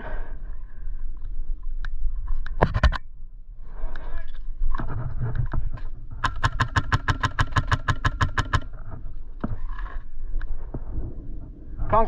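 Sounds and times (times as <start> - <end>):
airsoft gun full-auto burst: 6.2 - 8.7.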